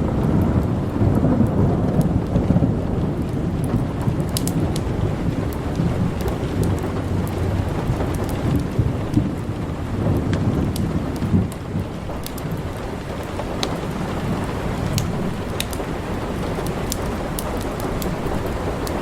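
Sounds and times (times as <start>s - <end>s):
low rumble of thunder: 0.0s - 19.0s
steady rain: 0.0s - 19.0s
wood fire crackling: 0.0s - 19.0s.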